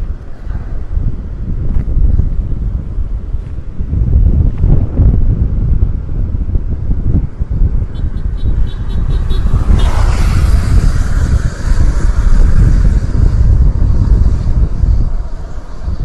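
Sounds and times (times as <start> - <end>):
broad rushing noise: 0.0 - 16.0
wind buffeting microphone: 0.0 - 16.0
car driving on flooded road: 8.4 - 16.0.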